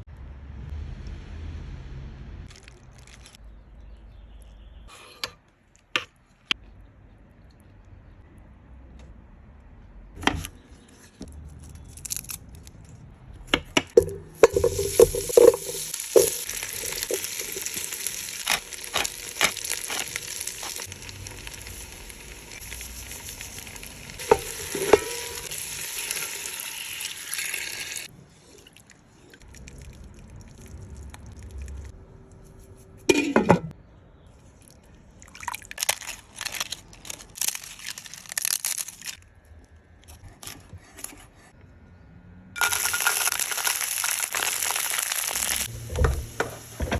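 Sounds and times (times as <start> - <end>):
utensil clinking in a pan: 14.0 - 20.8, 42.6 - 43.8
food sizzling in a pan: 14.4 - 28.1, 42.6 - 46.9.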